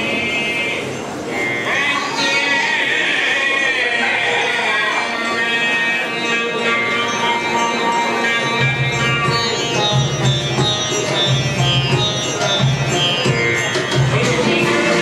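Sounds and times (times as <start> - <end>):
plucked string melody: 8.0 - 15.0.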